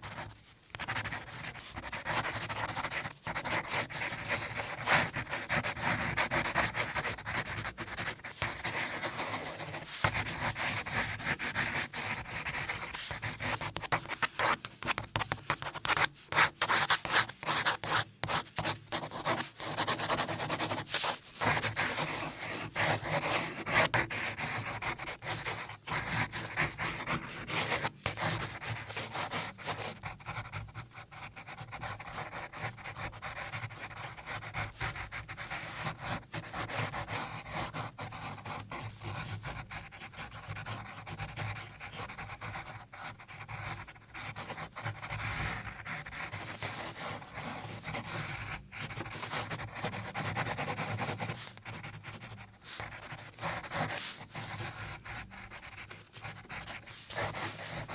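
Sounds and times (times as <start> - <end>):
scratchy rubbing noise: 0.3 - 25.4, 48.8 - 57.9.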